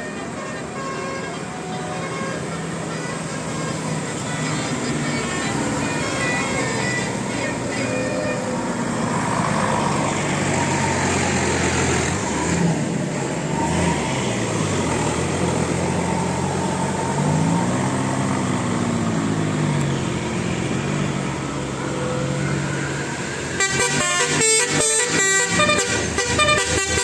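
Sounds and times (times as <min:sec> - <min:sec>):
heavy vehicles passing: 0:00.0 - 0:27.0.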